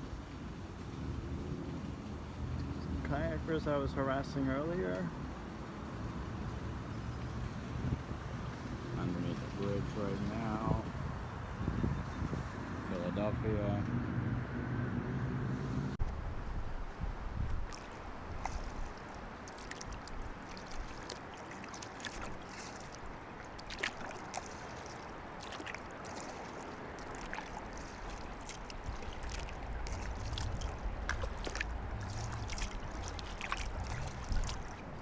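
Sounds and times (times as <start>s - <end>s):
steady wash of water: 0.0s - 13.8s, 16.0s - 35.0s
paddle splashing and dripping: 16.0s - 35.0s.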